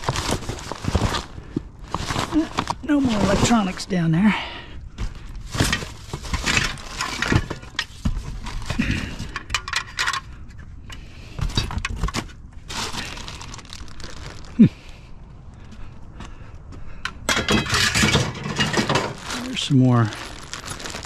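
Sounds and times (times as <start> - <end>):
scrap metal clinking and rattling: 5.4 - 13.2, 17.2 - 21.0.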